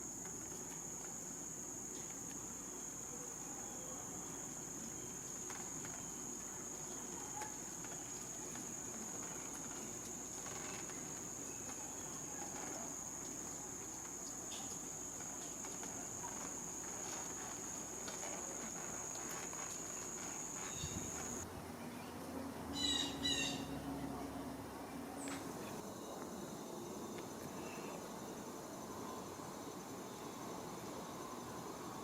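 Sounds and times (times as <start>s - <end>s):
insects trilling: 0.0s - 21.4s
faint ticks and rustles: 0.0s - 21.5s.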